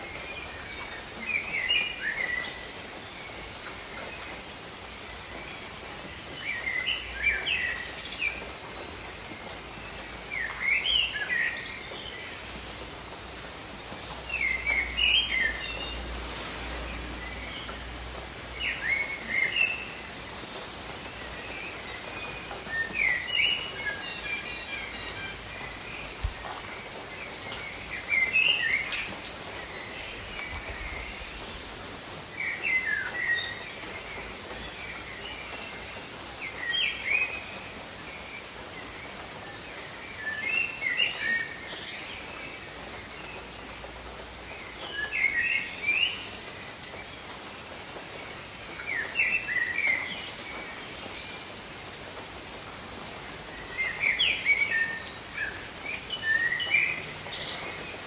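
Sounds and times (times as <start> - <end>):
rain on foliage: 0.0 - 58.0
songbird chirping: 14.3 - 37.8.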